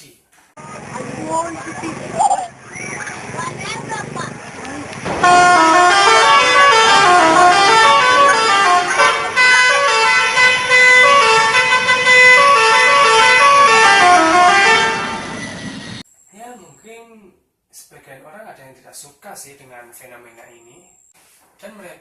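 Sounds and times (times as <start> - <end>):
musical horn playing short notes: 5.2 - 15.2.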